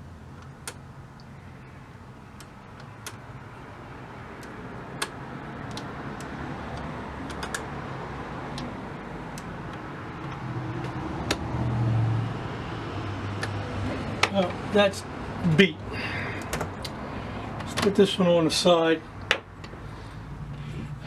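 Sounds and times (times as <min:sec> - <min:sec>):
knobs and switches clicking: 0:04.3 - 0:07.7.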